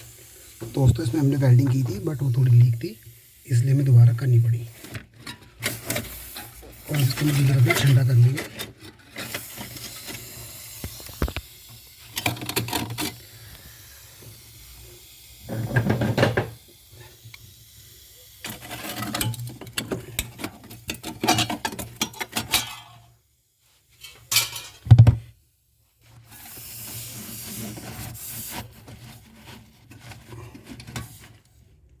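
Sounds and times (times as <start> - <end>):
tools clinking on metal pipes: 18.4 - 23.1, 24.0 - 24.8.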